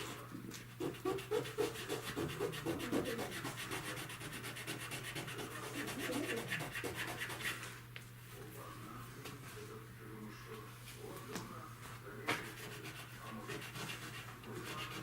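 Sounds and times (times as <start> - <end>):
hand sanding car panel: 0.8 - 7.5.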